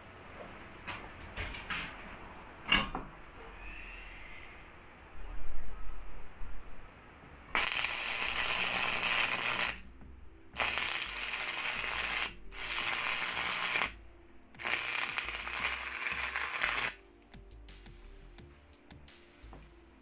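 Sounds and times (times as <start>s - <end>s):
welding arc crackling and hissing: 7.5s - 9.9s, 10.6s - 14.0s, 14.6s - 17.1s.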